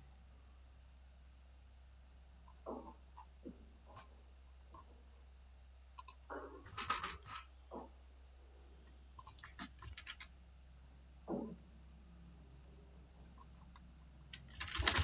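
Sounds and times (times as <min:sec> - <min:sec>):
low steady hum: 0:00.0 - 0:15.0
computer keyboard keystrokes: 0:06.0 - 0:07.4, 0:09.2 - 0:10.3, 0:14.3 - 0:15.0.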